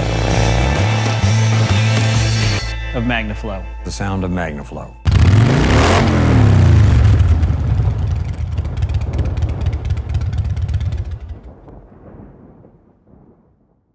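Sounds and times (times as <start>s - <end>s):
motorcycle engine revving: 0.0s - 2.6s, 5.0s - 11.5s.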